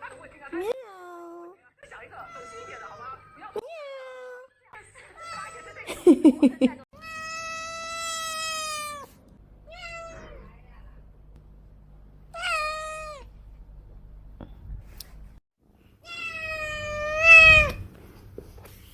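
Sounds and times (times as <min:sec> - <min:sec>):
cat meowing: 0:02.2 - 0:04.5, 0:07.0 - 0:10.5, 0:12.3 - 0:13.3, 0:16.0 - 0:17.9.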